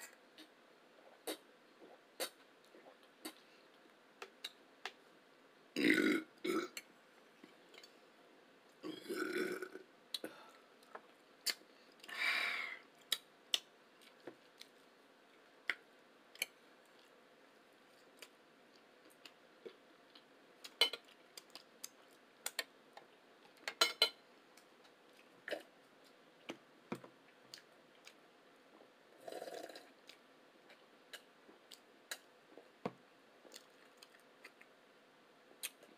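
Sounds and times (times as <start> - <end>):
person burping: 5.8 - 6.8, 8.8 - 9.8.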